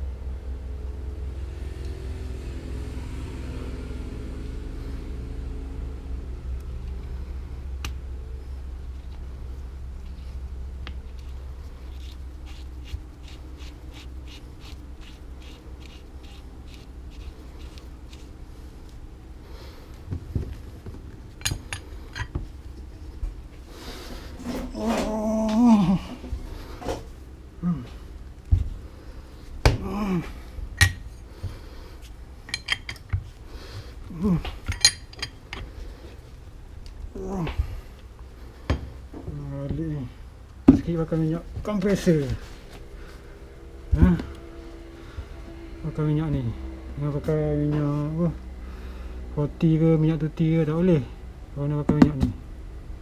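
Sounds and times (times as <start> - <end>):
steady low hum: 0.0 - 53.0
hand scratching strokes: 11.0 - 19.1
metal tools clinking: 21.3 - 22.4, 32.4 - 33.2, 34.4 - 35.7.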